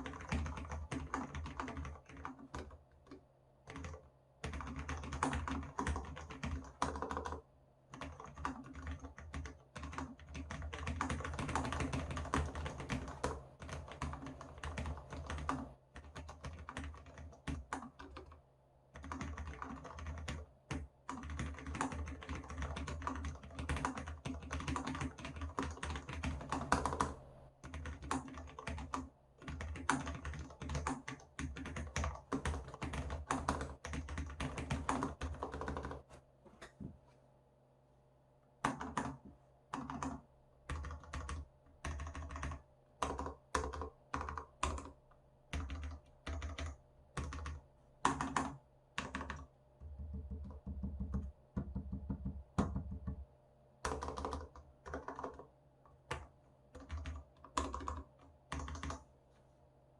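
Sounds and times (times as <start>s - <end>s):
keyboard typing: 0.0s - 36.8s, 38.6s - 39.2s, 39.8s - 53.2s, 53.8s - 59.0s.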